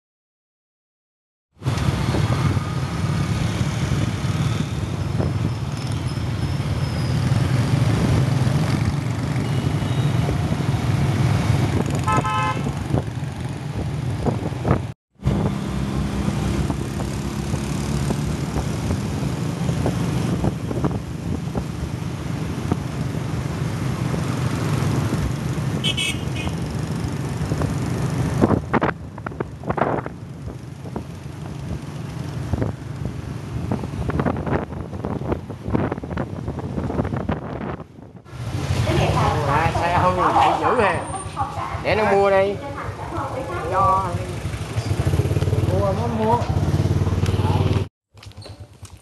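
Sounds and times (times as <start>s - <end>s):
vehicle horn short toots: 12.0s - 12.7s, 25.8s - 26.6s
motor scooter engine: 43.0s - 49.0s.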